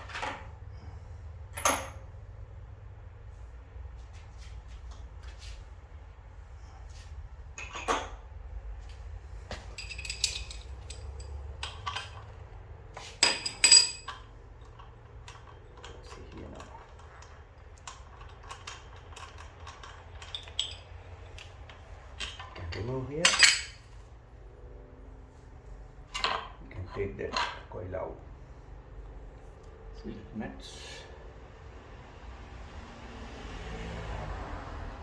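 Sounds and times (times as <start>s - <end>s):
metal tools clanking: 9.5s - 12.4s, 13.1s - 24.0s, 26.1s - 27.8s.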